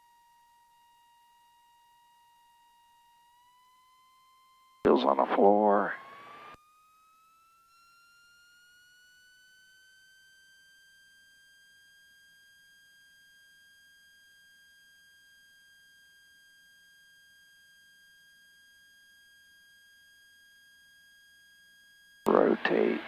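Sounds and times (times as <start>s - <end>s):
high-pitched electrical whine: 0.0s - 16.0s.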